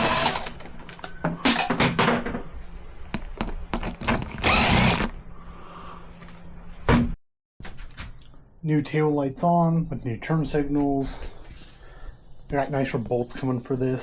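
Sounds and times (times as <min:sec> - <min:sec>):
power drill-driver bursts: 0:04.2 - 0:05.1.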